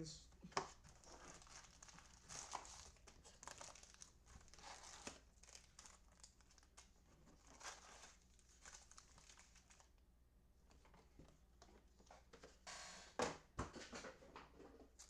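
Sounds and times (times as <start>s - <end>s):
card pack wrappers crinkling: 0.5s - 10.0s.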